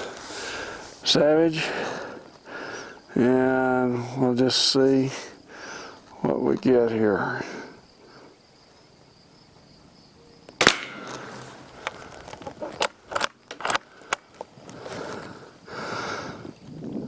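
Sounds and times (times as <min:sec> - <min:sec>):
rifle shot: 0:10.6 - 0:11.4
soft rustle: 0:11.0 - 0:15.5.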